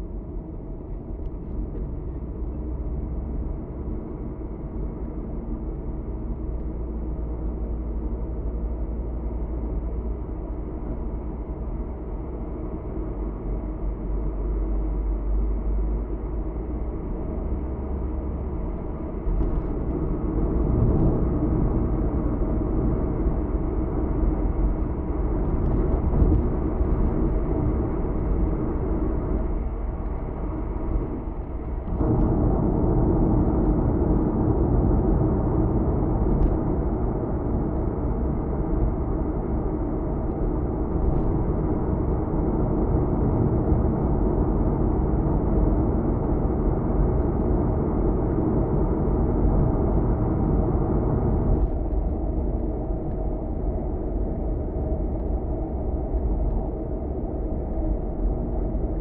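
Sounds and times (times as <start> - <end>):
car engine and road noise: 0.0 - 59.0.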